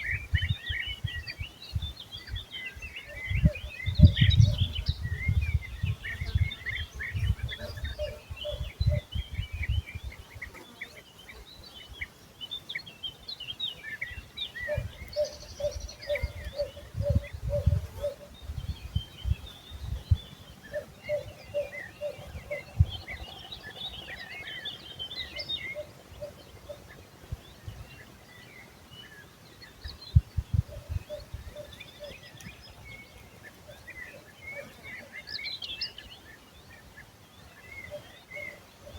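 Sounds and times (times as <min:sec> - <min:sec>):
wind buffeting microphone: 0:00.0 - 0:10.2, 0:14.7 - 0:24.5, 0:29.8 - 0:33.0
songbirds singing and chirping: 0:00.0 - 0:38.9.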